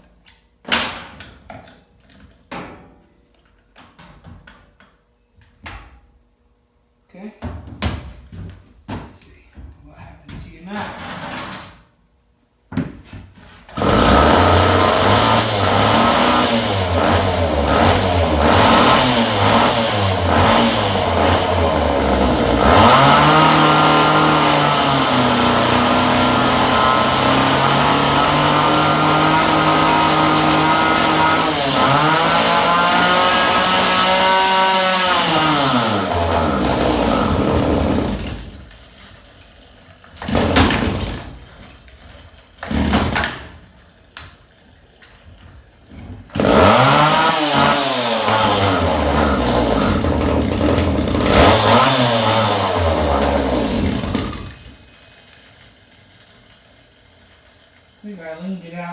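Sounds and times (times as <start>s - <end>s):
chainsaw engine revving: 13.8s - 38.6s, 40.2s - 41.2s, 42.6s - 43.2s, 46.3s - 54.7s.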